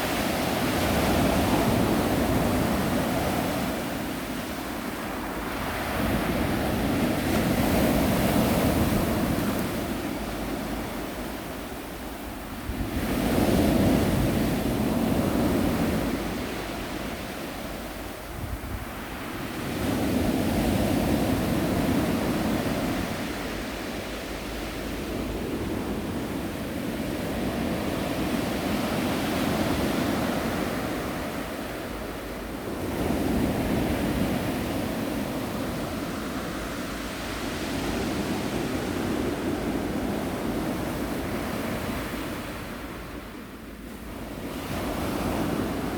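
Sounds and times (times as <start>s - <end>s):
waves breaking and washing in: 0.0s - 45.9s.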